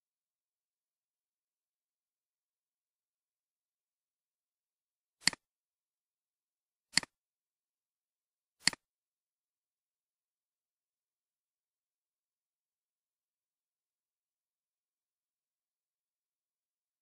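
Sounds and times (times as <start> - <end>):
computer mouse clicks: 5.2 - 5.5, 6.9 - 7.2, 8.6 - 8.9.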